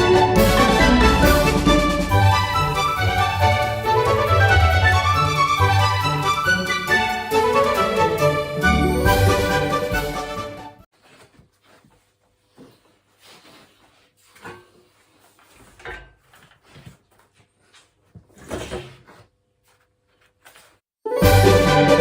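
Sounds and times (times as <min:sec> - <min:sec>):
music: 0:00.0 - 0:10.8, 0:21.1 - 0:22.0.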